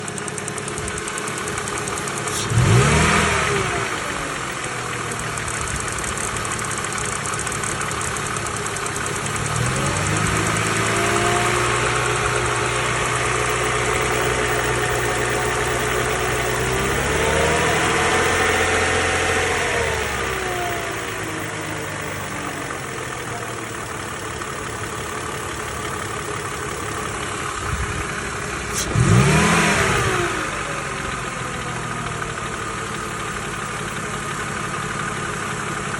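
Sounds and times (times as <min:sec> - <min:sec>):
car engine revving with knock: 0:00.2 - 0:34.5.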